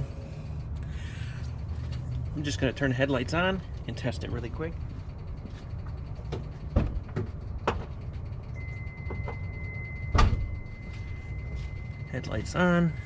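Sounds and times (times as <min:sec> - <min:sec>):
steady low rumble: 0:00.0 - 0:13.0
knocks and clicks of car controls: 0:06.3 - 0:08.0
car electronic warning tone: 0:08.5 - 0:13.0.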